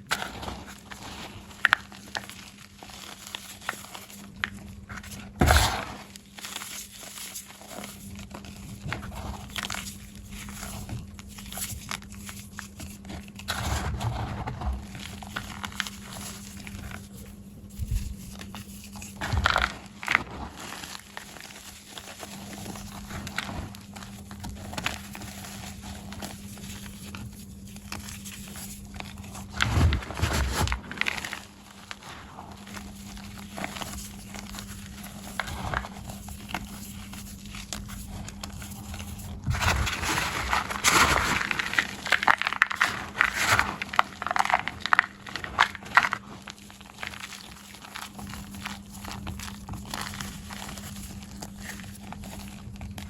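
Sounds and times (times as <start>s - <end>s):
chalk crunching and crumbling: 0.0s - 53.0s.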